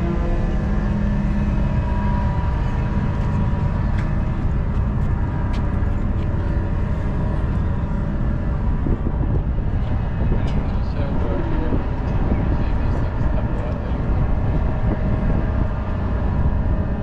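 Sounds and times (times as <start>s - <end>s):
loud horn blast: 0.0s - 4.3s
vehicle engine rumbling: 0.0s - 17.0s.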